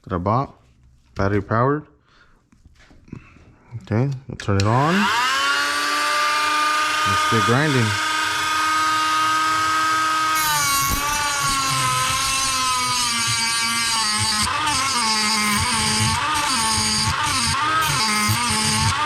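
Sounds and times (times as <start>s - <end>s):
die grinder whining: 4.5s - 19.0s.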